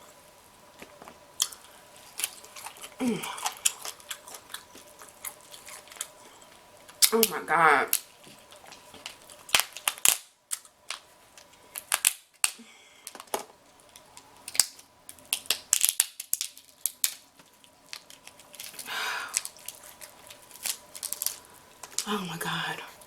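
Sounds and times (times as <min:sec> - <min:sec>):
crab shells cracking: 0:00.8 - 0:22.1.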